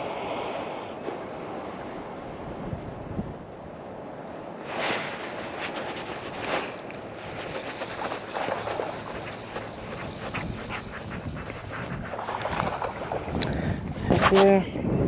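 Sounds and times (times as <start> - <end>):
wind buffeting microphone: 2.2 - 15.0
water splashing around kayak: 4.6 - 14.0.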